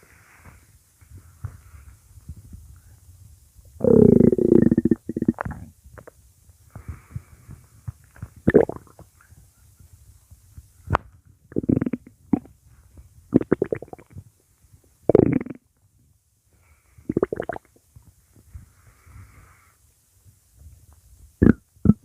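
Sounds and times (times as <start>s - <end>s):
stomach growling: 3.8s - 6.1s, 8.4s - 9.1s, 11.5s - 12.5s, 13.3s - 14.2s, 15.1s - 15.6s, 17.1s - 17.8s, 21.4s - 22.0s.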